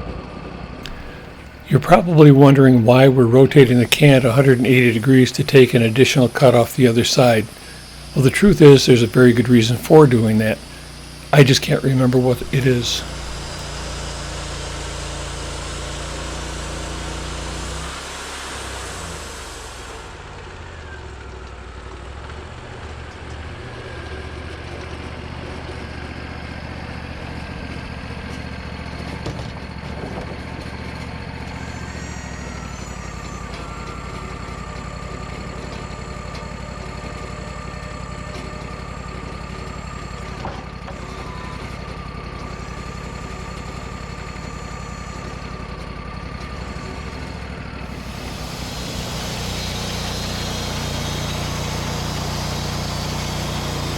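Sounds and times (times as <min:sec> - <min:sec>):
sawmill engine running: 0:00.0 - 0:53.9
thin steady whine: 0:00.8 - 0:20.2, 0:31.4 - 0:53.9.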